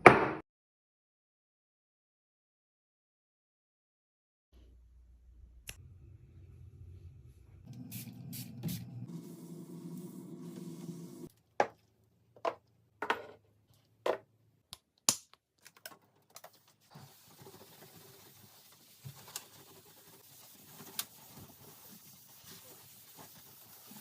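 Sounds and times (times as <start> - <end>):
steady low hum: 4.6 - 11.3.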